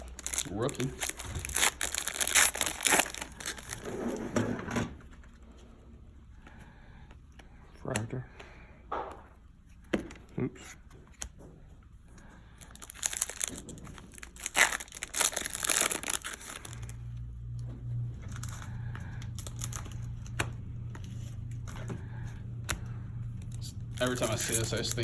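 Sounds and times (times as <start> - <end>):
plastic wrapper tearing and crinkling: 0.0 - 3.9, 12.6 - 17.0, 18.3 - 20.5, 23.4 - 25.0
low steady hum: 0.0 - 25.0.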